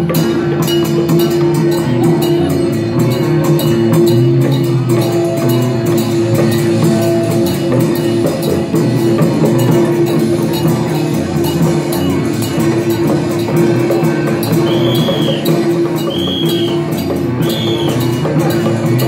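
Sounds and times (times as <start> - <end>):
fast percussion strokes: 0.0 - 19.0
held melodic tone: 0.0 - 19.0.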